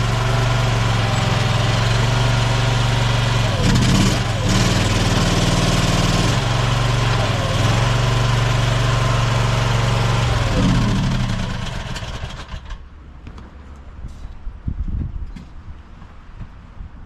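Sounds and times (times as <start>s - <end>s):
skid steer engine running: 0.0s - 13.1s.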